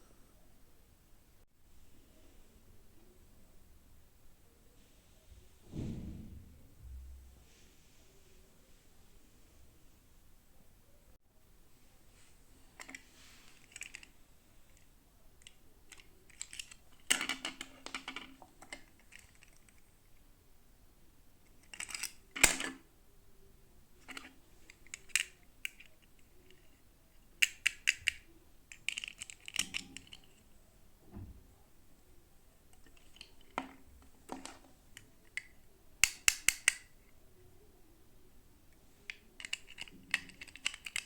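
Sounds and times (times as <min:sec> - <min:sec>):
plastic toy pieces clicking: 0:13.6 - 0:14.1, 0:15.4 - 0:19.8, 0:21.6 - 0:22.8, 0:24.0 - 0:26.6, 0:27.4 - 0:30.4, 0:32.8 - 0:36.9, 0:39.1 - 0:41.0.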